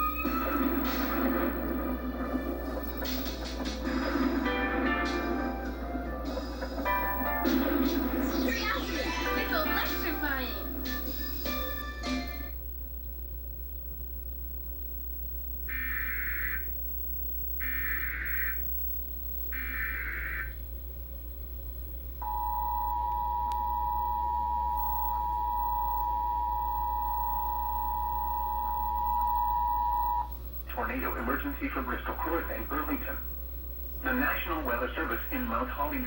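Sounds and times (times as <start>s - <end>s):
digital data bursts: 15.3s - 20.6s, 29.2s - 36.0s
two-tone alert signal: 22.2s - 30.3s.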